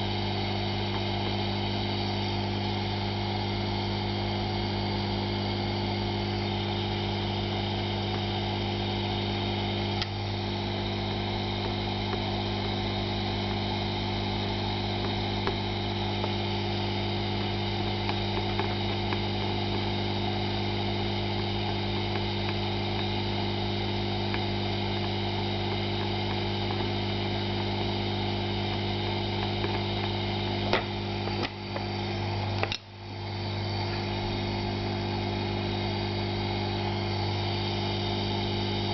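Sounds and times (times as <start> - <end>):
hot-air blower humming: 0.0 - 38.9.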